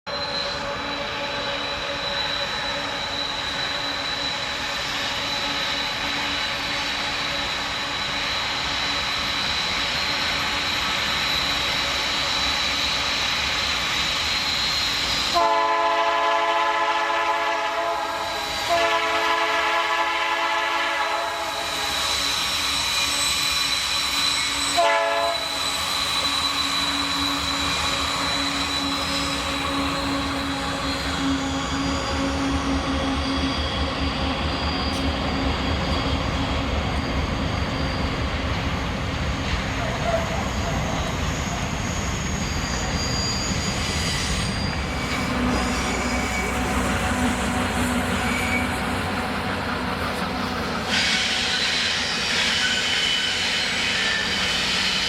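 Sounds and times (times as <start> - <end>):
freight train running on rails: 0.0 - 55.0
train horn blasts: 15.3 - 21.9, 24.7 - 25.6, 44.9 - 52.1.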